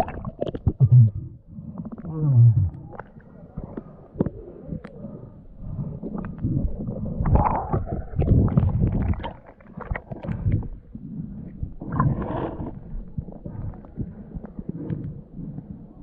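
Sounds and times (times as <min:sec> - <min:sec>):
water splashing and sloshing: 0:05.6 - 0:14.7.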